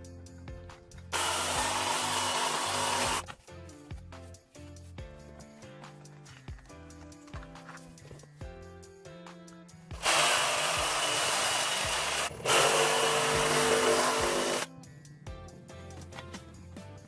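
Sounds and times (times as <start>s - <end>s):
background music: 0.0s - 17.0s
power tool running: 1.1s - 3.2s, 10.0s - 14.7s.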